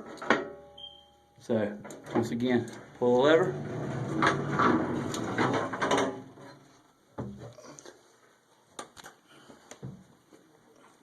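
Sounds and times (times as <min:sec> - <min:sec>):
metal knocks and clunks: 0:01.8 - 0:06.6.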